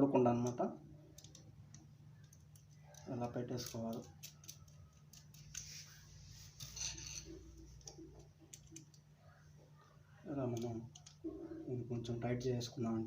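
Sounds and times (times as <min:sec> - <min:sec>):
faint low hum: 0:00.0 - 0:13.0
small clicks: 0:00.4 - 0:05.7, 0:10.5 - 0:11.2
short scraping rubs: 0:05.6 - 0:07.7.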